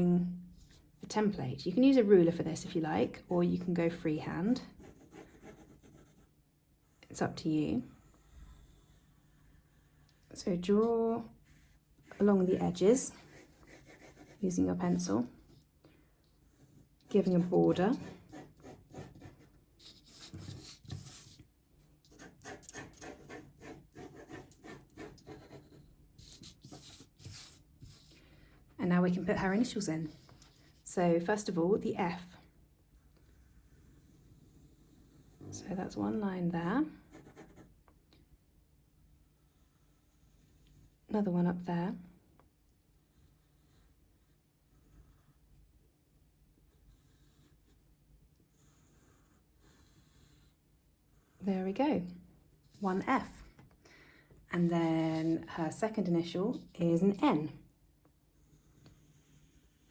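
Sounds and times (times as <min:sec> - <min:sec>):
pencil scratching on card: 0:04.6 - 0:15.6, 0:16.4 - 0:28.2, 0:29.1 - 0:36.1, 0:37.1 - 0:37.8, 0:39.2 - 0:41.1, 0:42.9 - 0:45.8, 0:46.6 - 0:51.8, 0:52.5 - 0:53.5, 0:54.6 - 0:57.2, 0:58.2 - 0:59.9.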